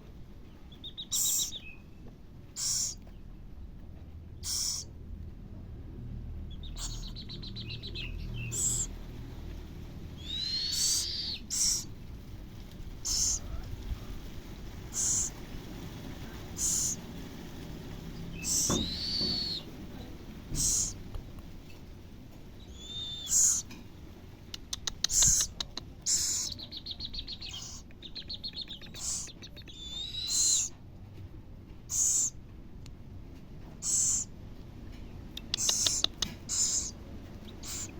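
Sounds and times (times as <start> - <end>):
soft chirping notes: 0.5 - 3.1, 4.4 - 4.9, 6.4 - 9.4, 10.0 - 12.1, 13.0 - 14.2, 14.8 - 15.5, 16.2 - 17.2, 18.1 - 21.0, 22.6 - 23.8, 24.6 - 30.7, 33.8 - 34.4, 35.4 - 37.9
owlet trilling calls: 0.8 - 1.7, 2.6 - 3.0, 4.4 - 4.9, 6.6 - 9.0, 10.2 - 12.0, 13.0 - 14.2, 14.8 - 17.1, 17.7 - 19.8, 20.5 - 21.0, 22.6 - 23.7, 24.7 - 30.7, 31.9 - 32.4, 33.8 - 34.3, 35.4 - 37.9
owlet hissing: 1.1 - 1.6, 2.6 - 3.0, 4.4 - 4.9, 8.4 - 9.0, 10.2 - 12.0, 13.0 - 14.2, 14.8 - 19.7, 20.4 - 21.0, 22.7 - 23.7, 25.0 - 26.5, 29.0 - 29.3, 30.3 - 30.7, 31.9 - 32.3, 33.8 - 34.3, 35.6 - 37.0, 37.6 - 37.9.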